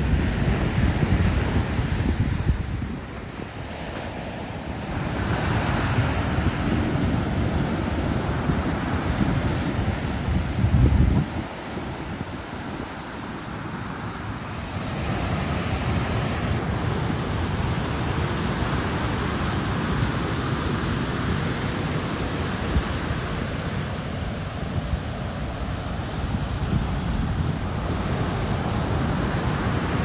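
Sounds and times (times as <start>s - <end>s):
wind buffeting microphone: 0.0s - 20.3s, 22.4s - 30.0s
ocean waves breaking: 0.0s - 30.0s.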